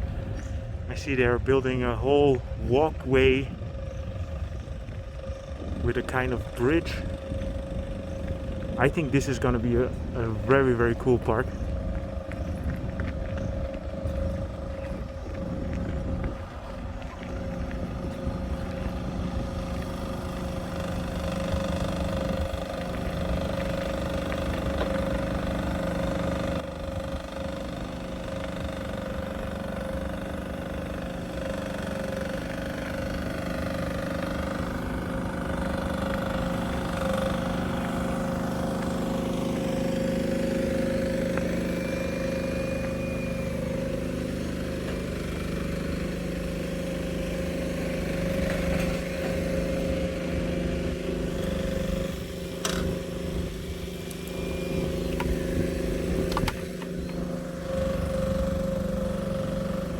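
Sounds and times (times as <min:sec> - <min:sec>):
engine hum with whine: 0:00.0 - 0:59.9.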